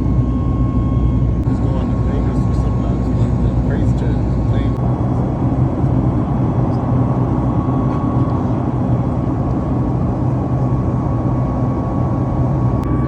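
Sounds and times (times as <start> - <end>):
faint high whine: 0.0 - 9.6
vehicle low rumble: 0.0 - 13.0.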